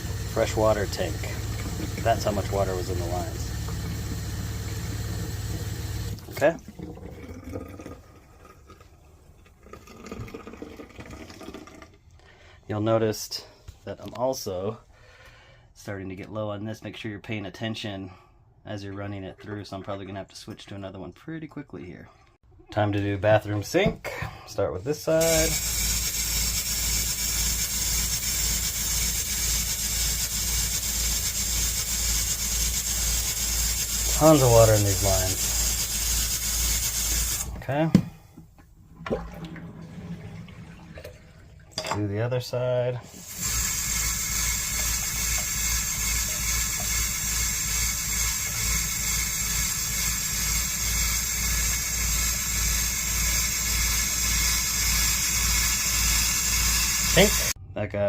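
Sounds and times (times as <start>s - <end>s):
water hissing from faucet: 0.0s - 8.8s, 25.1s - 37.5s, 43.1s - 57.6s
water pump running: 0.0s - 8.9s, 25.1s - 37.8s, 43.1s - 57.6s.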